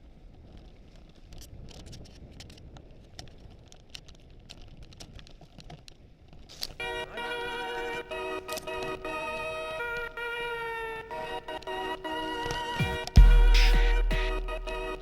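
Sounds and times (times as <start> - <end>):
low rumble of bike on trail: 0.0 - 6.8.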